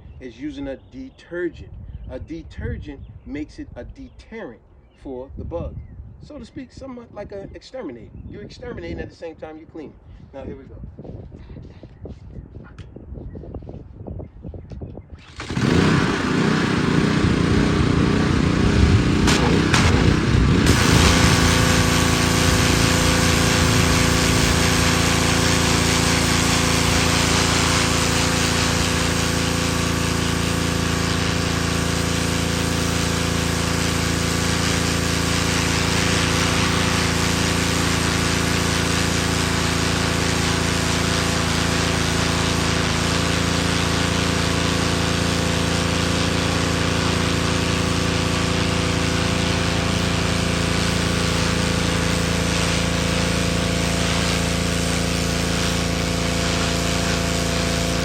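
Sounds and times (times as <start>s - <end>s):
pressure washer motor: 15.2s - 58.0s
water jet hissing on concrete: 15.3s - 58.0s.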